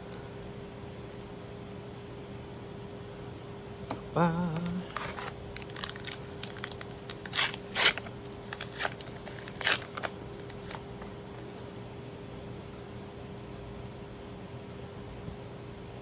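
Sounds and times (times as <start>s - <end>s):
person humming: 3.9s - 5.3s
foil wrapper crinkling and tearing: 4.8s - 10.8s.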